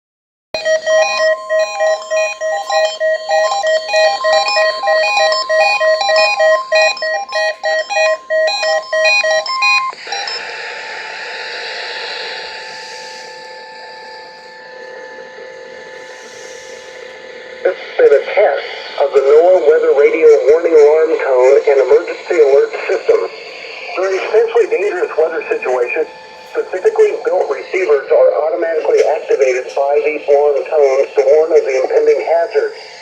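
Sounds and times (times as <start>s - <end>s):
alternating beeps: 0.6s - 10.5s, 12.4s - 33.0s
steady warning alarm tone: 0.6s - 33.0s
radio hiss: 10.0s - 13.4s, 15.9s - 33.0s.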